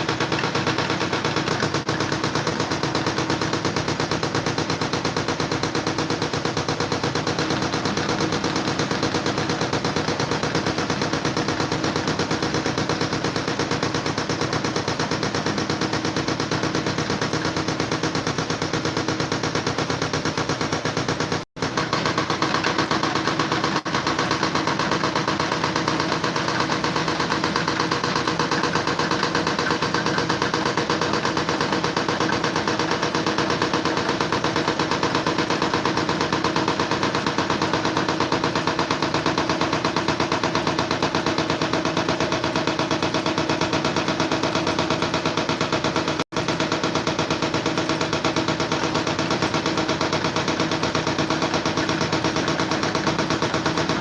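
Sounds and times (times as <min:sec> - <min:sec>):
rapid rattling clatter: 0:00.0 - 0:54.0.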